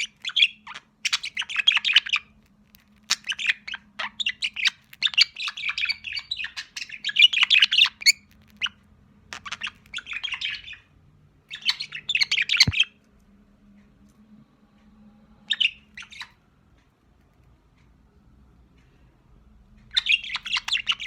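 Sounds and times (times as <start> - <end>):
budgerigar chattering: 19.9 - 21.0.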